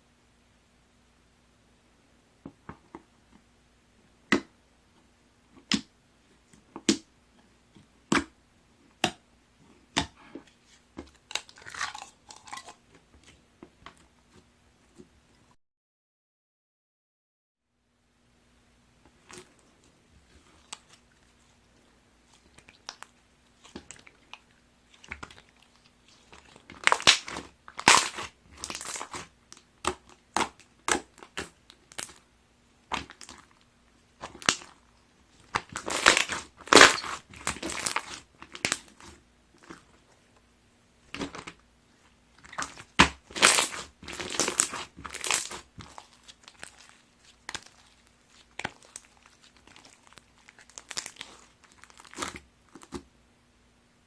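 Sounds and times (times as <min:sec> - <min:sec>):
slime squeezed with crackling pops: 0:22.3 - 0:32.2, 0:32.8 - 0:33.6, 0:34.2 - 0:40.0, 0:42.4 - 0:53.0.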